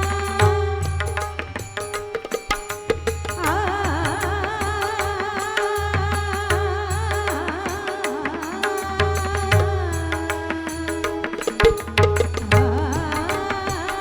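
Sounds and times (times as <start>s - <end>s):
person singing ornamented melody: 0.0s - 1.6s
hand drums playing: 0.0s - 14.0s.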